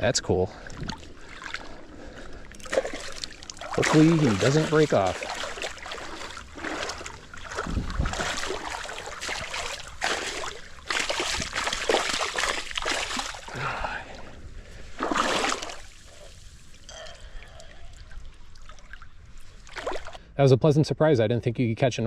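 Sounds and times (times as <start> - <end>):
fish thrashing and splashing: 0.6 - 13.6, 15.0 - 16.5, 18.0 - 20.2
creek rushing: 2.6 - 13.7.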